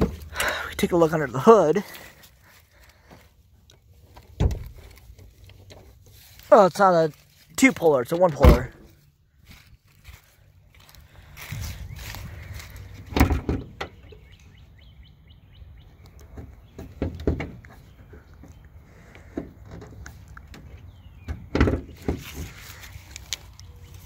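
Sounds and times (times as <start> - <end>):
birds chirping faintly: 0.0 - 24.0
metal car parts clunking: 12.7 - 14.3.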